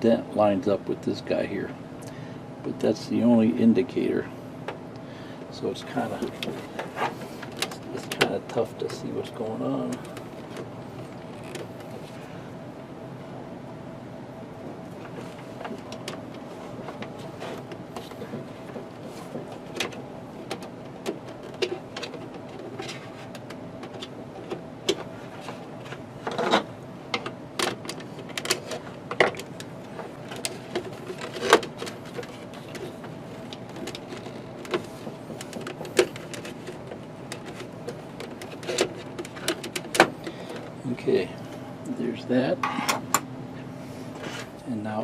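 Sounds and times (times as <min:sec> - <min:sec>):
steady hum: 0:00.0 - 0:45.0
cable connectors clicking and tapping: 0:26.2 - 0:40.7.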